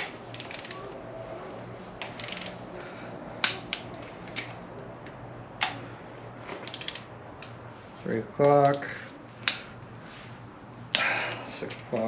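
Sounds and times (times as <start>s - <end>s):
ratchet clicks: 0.0s - 0.8s, 2.0s - 2.6s, 6.6s - 7.6s
low steady hum: 0.0s - 12.0s.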